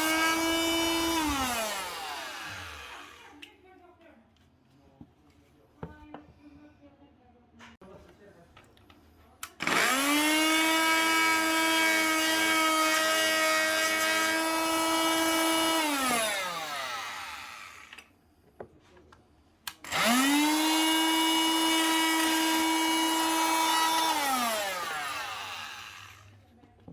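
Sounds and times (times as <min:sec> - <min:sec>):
oscillating multi-tool whine: 0:00.0 - 0:03.4, 0:09.6 - 0:18.1, 0:19.8 - 0:26.4.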